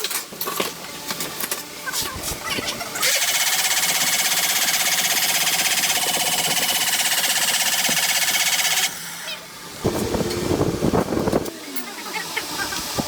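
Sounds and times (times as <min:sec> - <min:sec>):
machine running with fast pulsing: 0:01.4 - 0:13.0.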